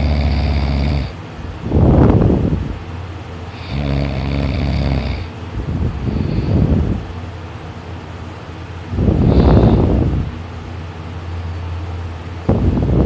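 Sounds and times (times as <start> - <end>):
heavy snoring: 0.0 - 1.2, 3.5 - 5.4.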